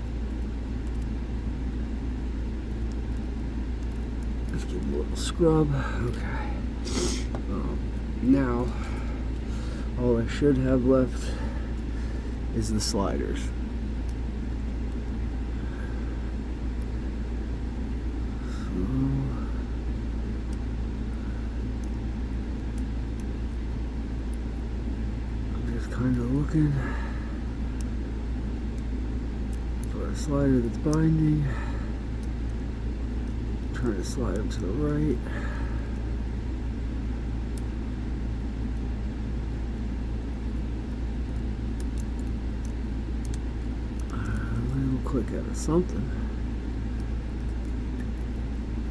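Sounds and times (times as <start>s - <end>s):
lock pick ticking: 0.0s - 6.3s, 20.0s - 48.9s
low background rumble: 0.0s - 48.9s
low hum: 0.0s - 48.9s
metallic ticks of lock pick: 40.4s - 44.8s.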